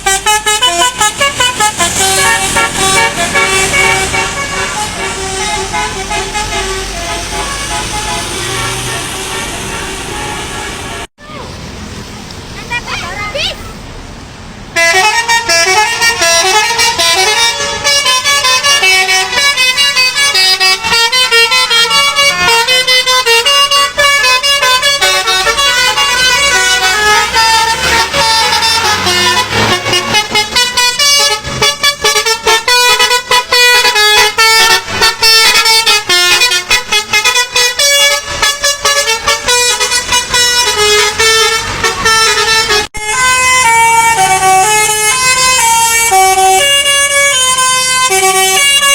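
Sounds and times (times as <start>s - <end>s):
musical air horn tune: 0.0s - 11.1s, 14.8s - 48.9s.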